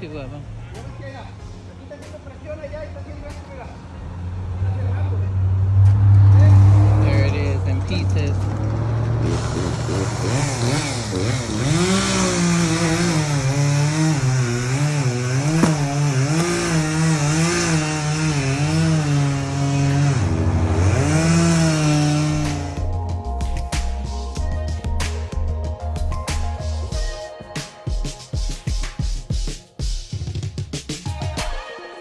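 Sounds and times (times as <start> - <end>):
chainsaw cutting wood: 5.7 - 22.8.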